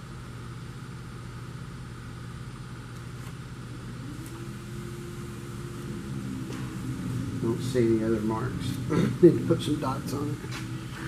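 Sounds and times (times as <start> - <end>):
low motor hum: 2.7 - 11.0
motor tone rising in pitch: 3.7 - 11.0.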